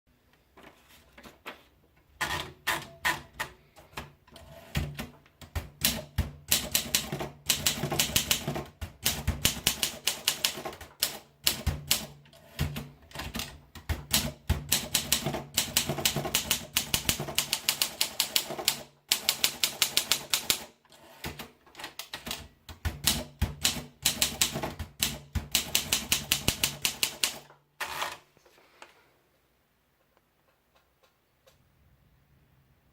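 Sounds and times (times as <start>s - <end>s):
typewriter keystroke clacks: 4.7s - 28.1s.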